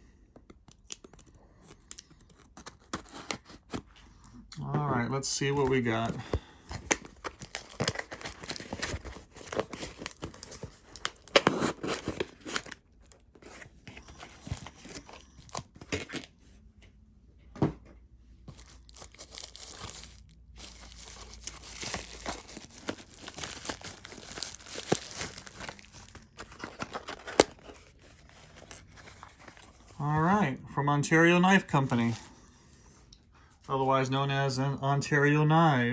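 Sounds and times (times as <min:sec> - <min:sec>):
packaging tearing and crinkling: 0:00.7 - 0:03.9, 0:05.4 - 0:16.3, 0:18.5 - 0:30.0.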